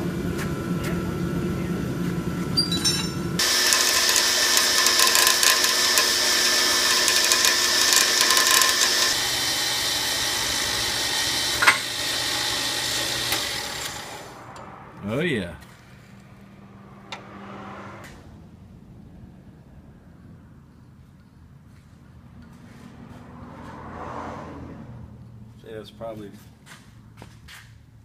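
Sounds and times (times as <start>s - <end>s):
power saw cutting steel: 2.8s - 18.4s.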